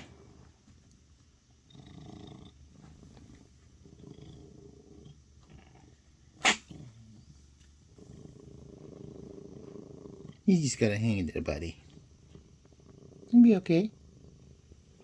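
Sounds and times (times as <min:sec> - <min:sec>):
pet sneezing: 0:06.4 - 0:06.9.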